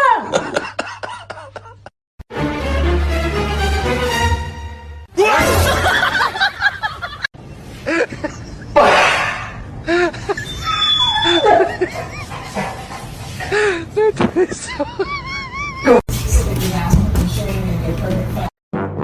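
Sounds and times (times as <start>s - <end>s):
human laughter: 0.0s - 1.9s, 11.2s - 16.0s.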